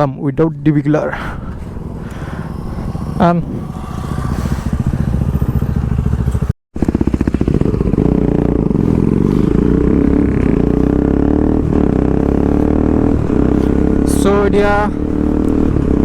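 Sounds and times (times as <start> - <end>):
loud motorcycle engine pulsing: 1.1 - 16.0.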